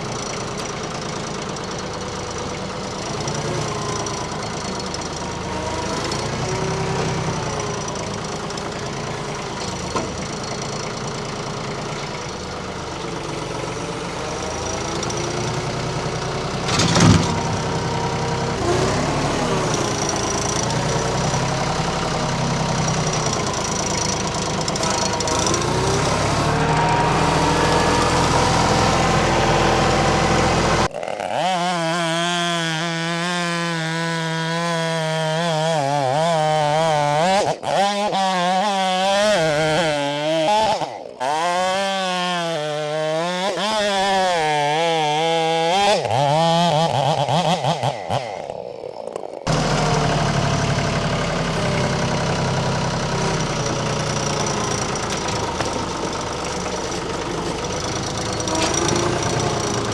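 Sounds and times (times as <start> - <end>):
tractor diesel engine running: 0.0 - 31.0, 48.8 - 59.9
chainsaw running: 0.0 - 59.9.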